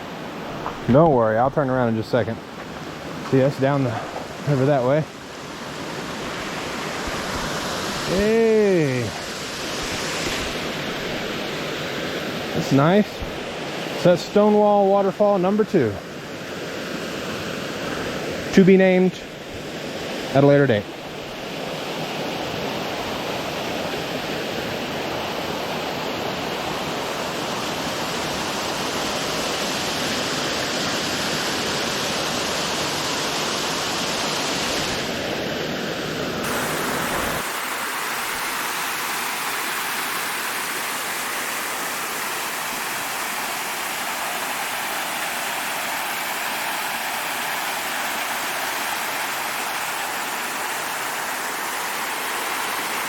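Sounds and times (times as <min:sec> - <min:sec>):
waterfall rushing water: 0:00.0 - 0:15.7, 0:19.6 - 0:53.0.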